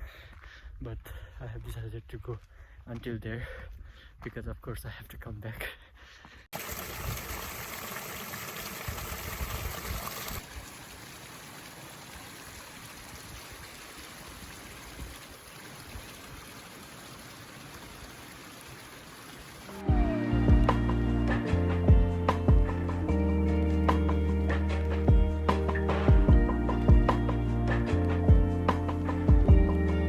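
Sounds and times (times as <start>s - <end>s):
background music: 19.8s - 30.0s.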